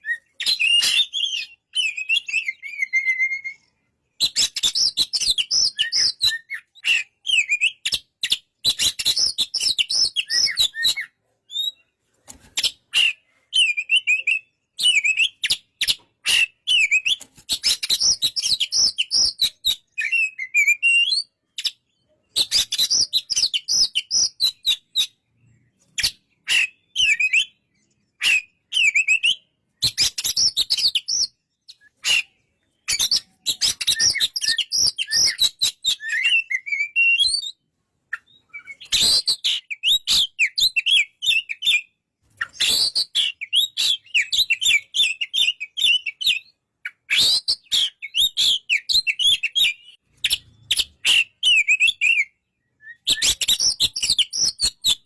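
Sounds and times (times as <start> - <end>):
magpie-robin singing: 0.0 - 55.0.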